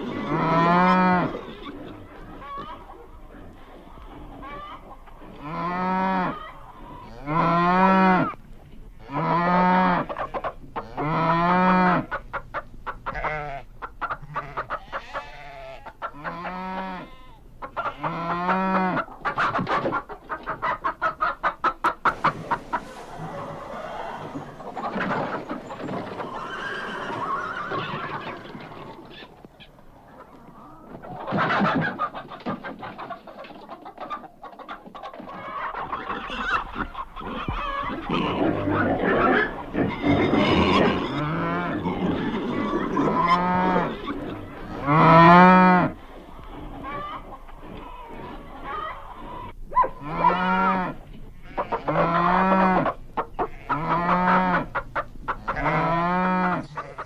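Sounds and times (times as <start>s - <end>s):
chickens clucking: 0.0s - 57.0s
farm animal short repeated calls: 21.8s - 29.4s, 51.4s - 57.0s.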